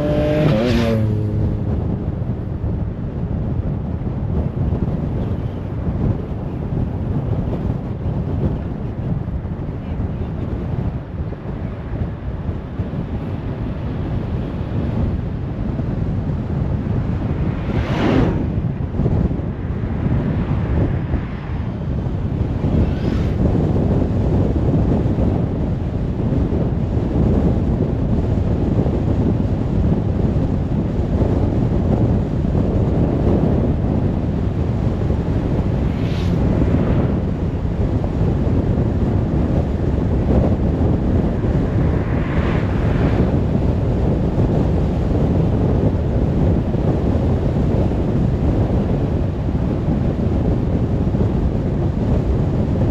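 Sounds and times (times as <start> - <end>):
vehicles whooshing past: 0.0 - 2.5, 15.2 - 24.4, 33.7 - 45.6
car wind and road noise: 0.0 - 52.9.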